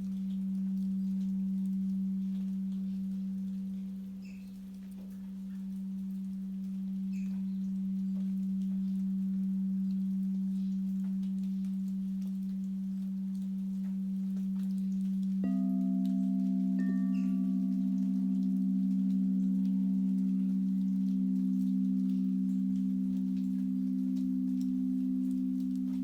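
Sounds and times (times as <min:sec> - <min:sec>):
low singing bowl tone: 0:00.0 - 0:26.0
higher singing bowl ringing: 0:13.8 - 0:26.0
light bowl strike: 0:13.9 - 0:26.0.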